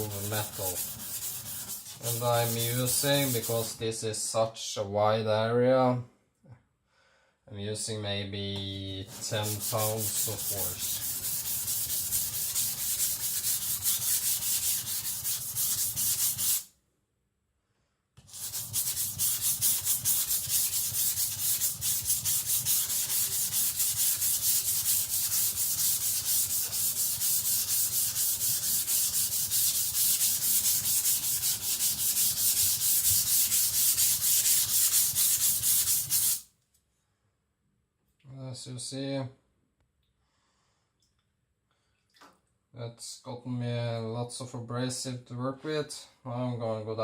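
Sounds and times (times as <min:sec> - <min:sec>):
blade scraping on whetstone: 0:00.0 - 0:03.7, 0:09.1 - 0:16.6, 0:18.3 - 0:36.4.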